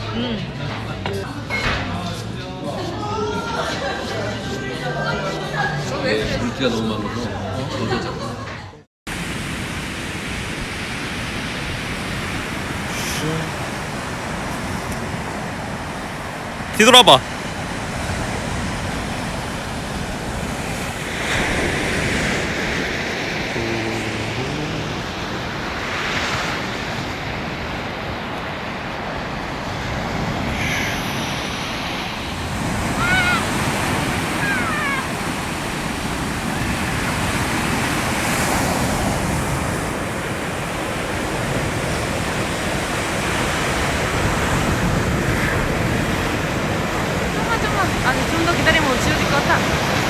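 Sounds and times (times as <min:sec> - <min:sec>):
sea waves breaking on beach: 0:09.1 - 0:50.0
short high falling calls: 0:32.9 - 0:35.4.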